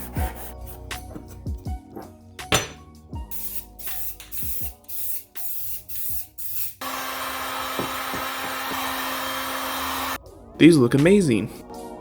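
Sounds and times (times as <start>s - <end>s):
spray can hissing: 3.3s - 6.8s.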